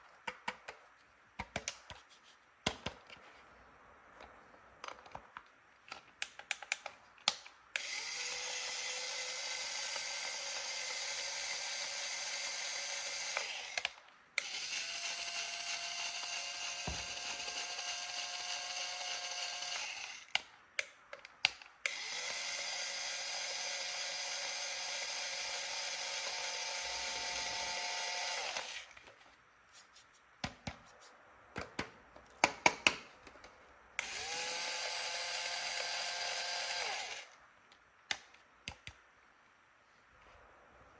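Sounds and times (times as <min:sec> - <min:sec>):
plastic clicks: 0:04.2 - 0:07.6, 0:37.7 - 0:39.0
toy drill buzzing whine: 0:07.8 - 0:20.4, 0:21.9 - 0:29.0, 0:34.0 - 0:37.4.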